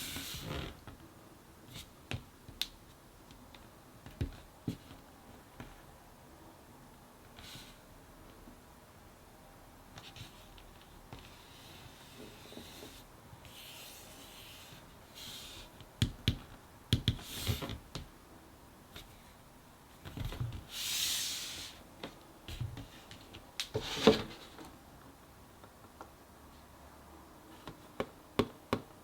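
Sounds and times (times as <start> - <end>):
cardboard scrape: 23.8 - 24.6.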